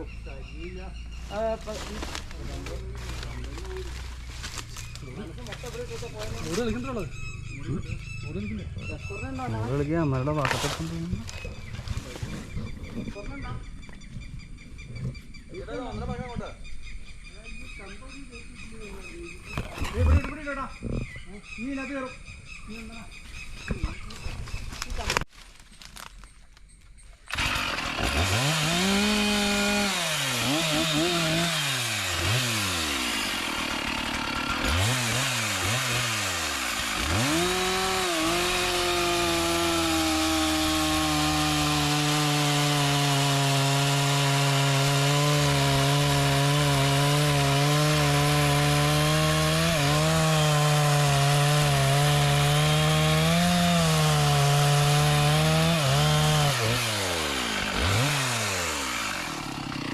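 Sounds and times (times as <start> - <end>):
chainsaw revving and cutting wood: 0.6 - 8.5, 27.3 - 59.9.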